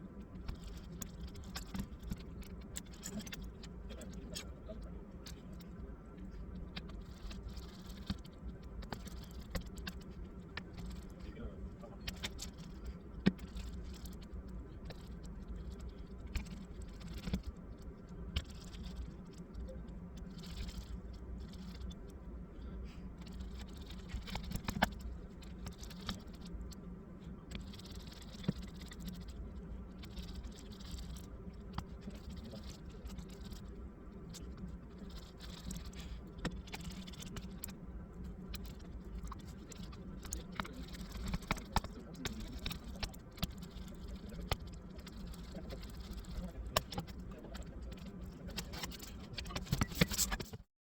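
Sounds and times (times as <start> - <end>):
steady low hum: 0.0 - 50.6
small laptop parts clicking: 38.5 - 50.6.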